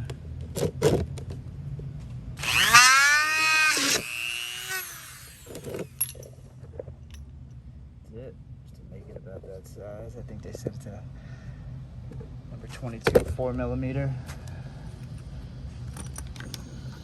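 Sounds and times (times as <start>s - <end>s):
power drill whining: 2.4s - 6.1s.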